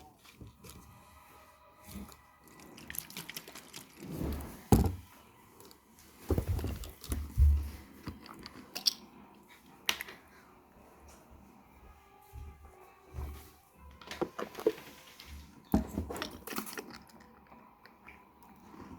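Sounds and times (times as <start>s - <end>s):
chewing crunchy food: 1.9s - 4.2s, 7.9s - 9.8s, 16.1s - 18.9s.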